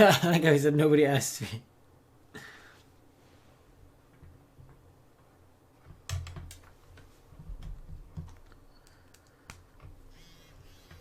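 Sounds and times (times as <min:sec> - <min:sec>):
low steady hum: 0:00.0 - 0:11.0
faint clicks and taps: 0:04.1 - 0:10.0.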